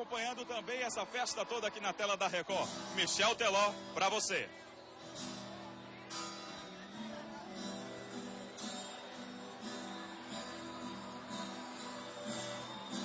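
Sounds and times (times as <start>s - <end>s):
acoustic guitar strumming chords: 4.7s - 13.0s.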